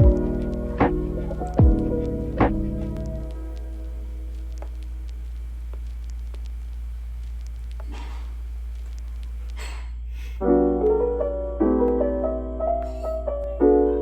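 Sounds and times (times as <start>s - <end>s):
piano chords: 0.0s - 4.5s, 10.4s - 14.0s
steady low hum: 0.0s - 10.4s.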